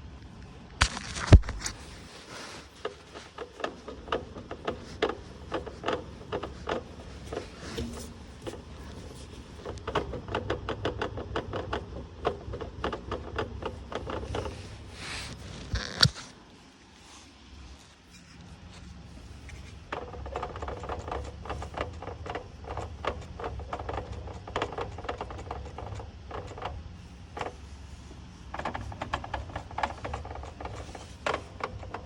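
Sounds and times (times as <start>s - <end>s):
irregular knocks and clicks: 2.8s - 14.8s, 19.5s - 27.6s.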